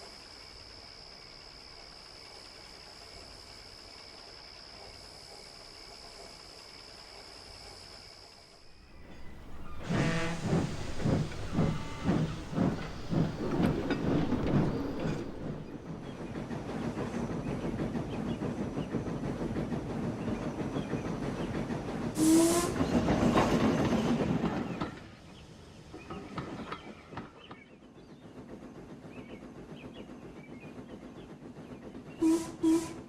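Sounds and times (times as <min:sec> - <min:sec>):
train hiss and rattle: 0:00.0 - 0:33.0
steam locomotive chuffing: 0:08.6 - 0:24.8, 0:28.3 - 0:33.0.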